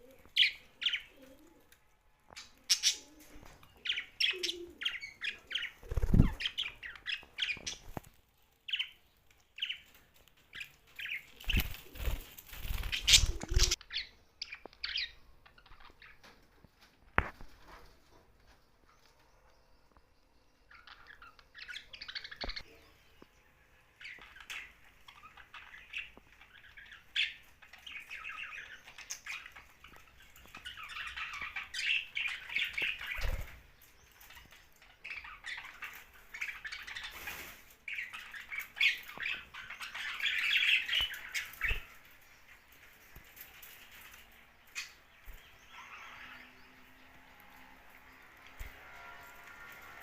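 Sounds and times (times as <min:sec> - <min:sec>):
budgerigars chirping and squawking: 0:02.4 - 0:08.0, 0:24.0 - 0:33.6, 0:34.2 - 0:42.1, 0:43.6 - 0:50.0.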